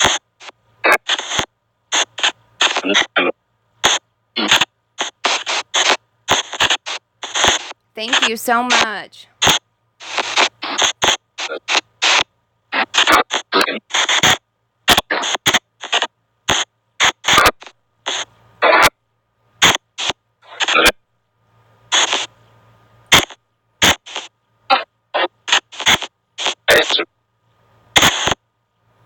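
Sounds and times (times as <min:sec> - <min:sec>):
choppy bursts of static: 0:00.0 - 0:17.4, 0:25.2 - 0:27.0.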